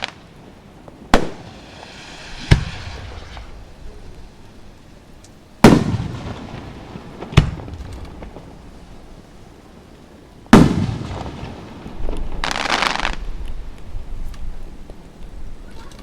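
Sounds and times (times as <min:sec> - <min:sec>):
firework shells booming: 0:00.0 - 0:04.4, 0:05.6 - 0:09.0, 0:10.5 - 0:13.4.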